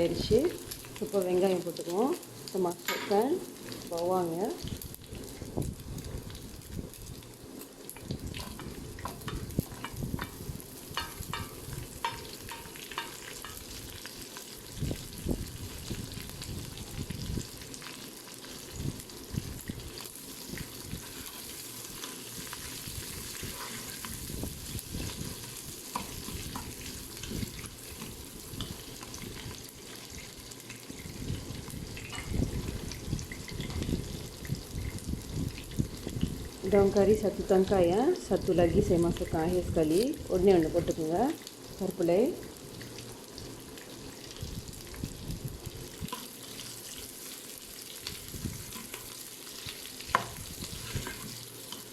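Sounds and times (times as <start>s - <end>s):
onions sizzling in hot oil: 0.0s - 51.9s
pot stirring clicks and scrapes: 8.4s - 14.5s, 19.6s - 33.9s, 46.1s - 51.9s.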